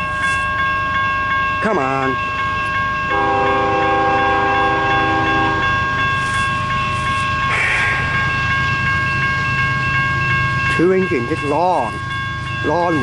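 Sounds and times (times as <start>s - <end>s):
train rumbling: 0.0s - 13.0s
locomotive air horn chord: 3.1s - 5.7s.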